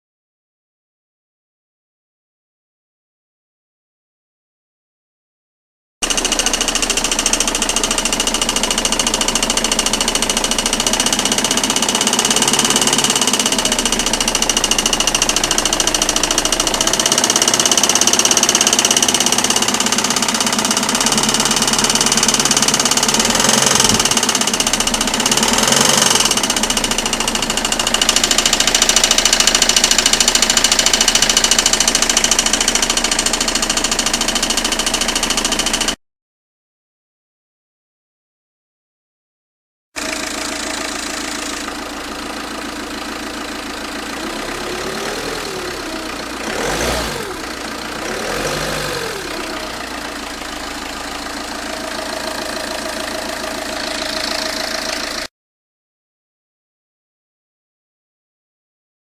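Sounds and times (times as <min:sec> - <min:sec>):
diesel engine running: 0:06.0 - 0:36.0, 0:40.0 - 0:55.3
fast even engine clacking: 0:06.0 - 0:36.0, 0:40.0 - 0:55.3.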